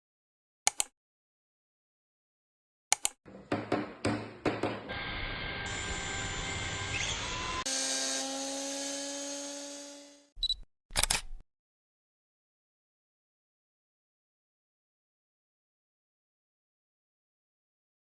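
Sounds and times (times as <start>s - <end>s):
short clicks: 0.7s - 1.0s, 2.9s - 3.2s, 10.4s - 11.4s
sharp knocks: 3.3s - 4.9s
electric power tool running: 4.5s - 10.4s.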